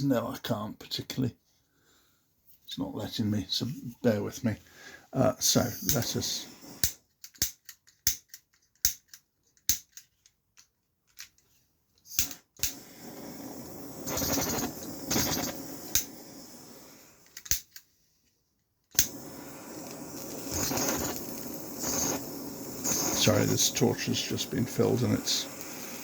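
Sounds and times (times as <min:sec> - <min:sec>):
gas torch hissing: 0:05.2 - 0:07.0, 0:12.1 - 0:17.7, 0:19.0 - 0:26.0
sharp igniter clicks: 0:05.6 - 0:09.9, 0:12.0 - 0:17.9, 0:18.9 - 0:26.0.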